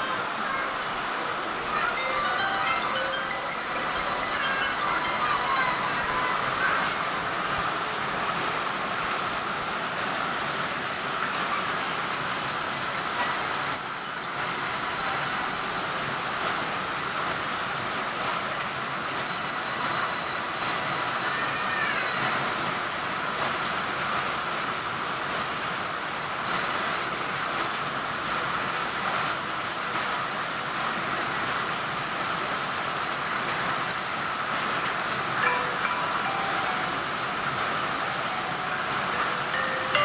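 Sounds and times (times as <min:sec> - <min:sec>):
heavy rain falling: 0:00.0 - 0:19.6.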